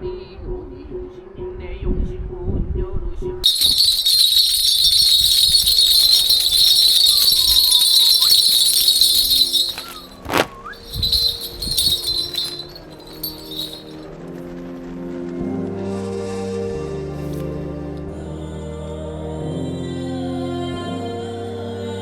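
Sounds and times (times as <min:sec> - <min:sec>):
brass hand bells jingling: 0:03.4 - 0:14.0.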